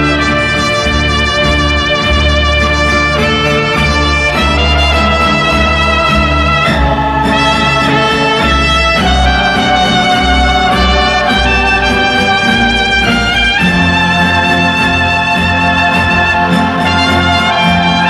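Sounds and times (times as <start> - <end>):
brass melody: 0.0 - 18.0
steady bass line: 0.0 - 18.0
strings: 0.0 - 18.0.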